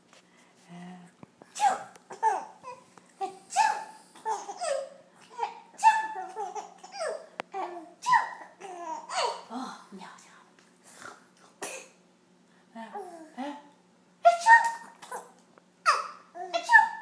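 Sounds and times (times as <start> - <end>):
baby laughing: 1.6 - 9.5.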